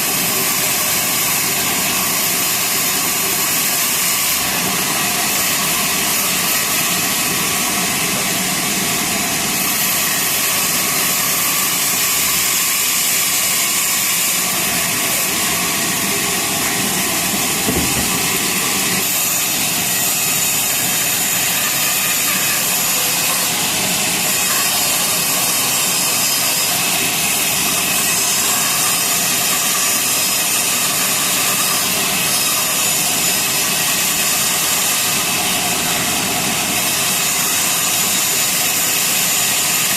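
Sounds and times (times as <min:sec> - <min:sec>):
sawmill saw cutting log: 0:00.0 - 0:39.9
short knock: 0:17.6 - 0:18.5.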